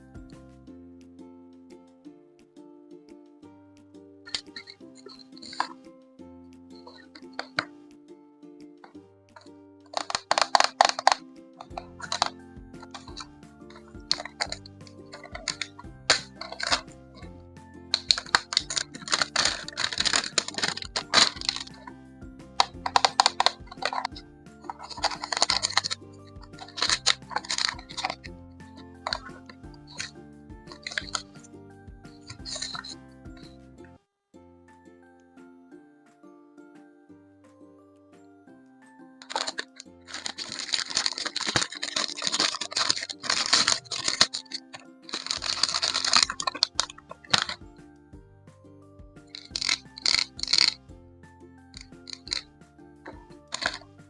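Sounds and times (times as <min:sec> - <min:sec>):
quiet background music: 0:00.0 - 0:54.0
plastic packaging crinkling: 0:04.3 - 0:05.7, 0:09.9 - 0:16.9, 0:18.0 - 0:21.9, 0:22.6 - 0:28.3, 0:28.9 - 0:31.4, 0:32.2 - 0:33.0, 0:39.2 - 0:47.6, 0:49.3 - 0:50.8, 0:51.8 - 0:52.5, 0:53.1 - 0:53.9.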